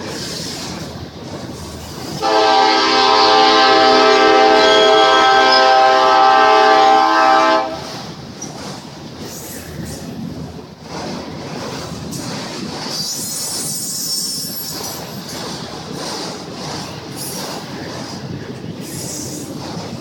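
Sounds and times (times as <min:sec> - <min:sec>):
passing train rumble and clatter: 0:00.0 - 0:20.0
locomotive air horn: 0:02.2 - 0:07.9.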